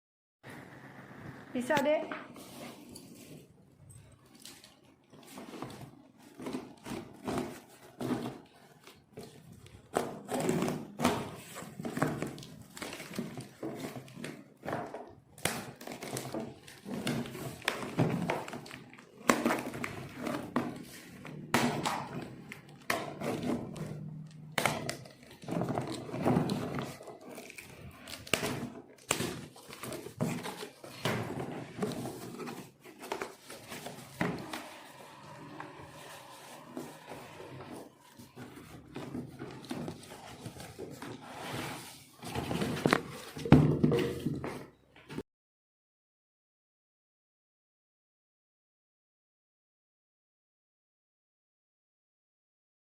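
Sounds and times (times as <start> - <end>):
hard objects knocking and clattering: 4.8 - 41.6, 42.2 - 45.2.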